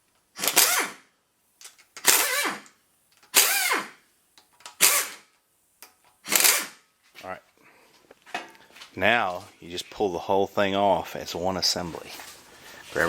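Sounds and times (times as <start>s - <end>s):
power tool bursts spinning bolts: 0.3s - 1.0s, 1.9s - 4.0s, 4.6s - 5.3s, 6.2s - 6.8s.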